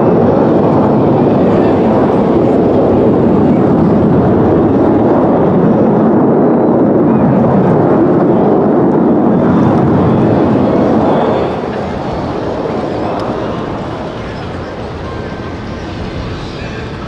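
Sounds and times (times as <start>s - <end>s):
aircraft engine roar: 0.0s - 17.0s.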